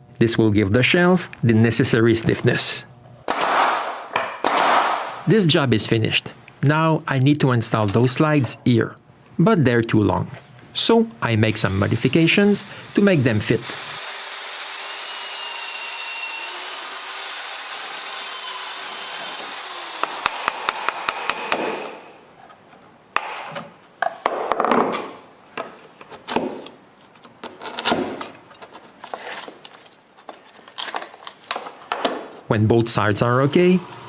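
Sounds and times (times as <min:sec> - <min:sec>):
power tool running: 0:11.6 - 0:22.1, 0:33.2 - 0:34.0.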